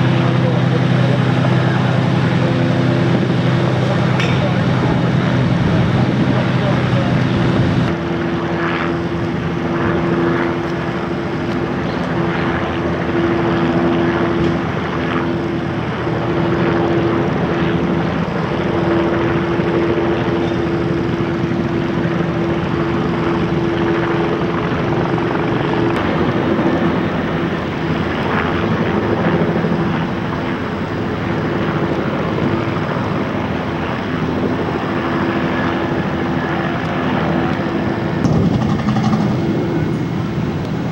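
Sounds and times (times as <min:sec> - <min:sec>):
engine droning: 0:00.0 - 0:26.3, 0:37.5 - 0:40.9
continuous rushing noise: 0:00.0 - 0:40.9.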